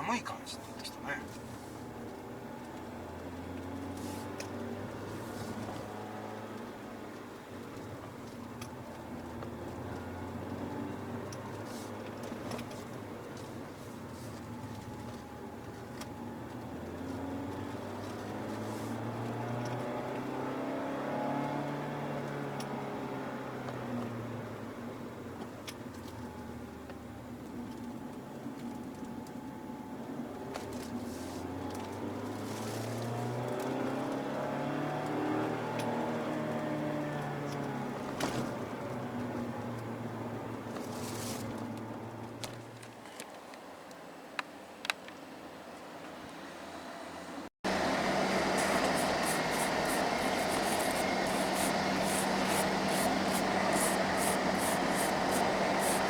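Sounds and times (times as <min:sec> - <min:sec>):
car road noise with low hum: 0:00.0 - 0:56.0
car engine accelerating: 0:47.6 - 0:56.0.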